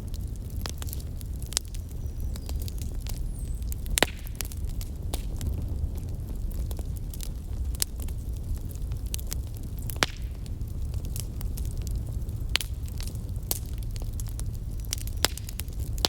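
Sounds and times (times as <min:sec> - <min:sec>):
wood fire crackling: 0:00.0 - 0:16.0.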